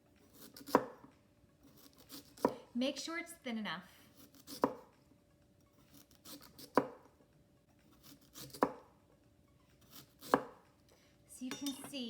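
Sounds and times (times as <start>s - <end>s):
knife slicing sweet potato: 0.3s - 2.7s, 4.1s - 4.9s, 5.8s - 7.1s, 7.9s - 8.9s, 9.8s - 10.7s.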